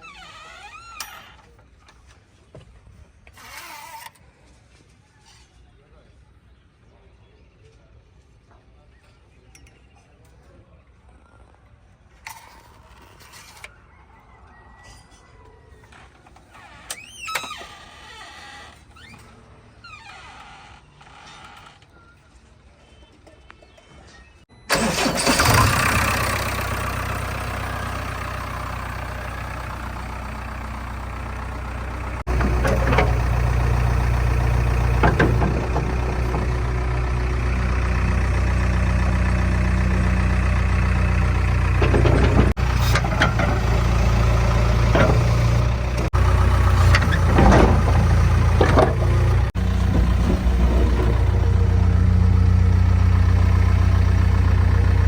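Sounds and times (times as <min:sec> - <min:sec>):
heavy machinery diesel engines: 0:24.7 - 0:55.0
short metal clanks: 0:44.8 - 0:51.5.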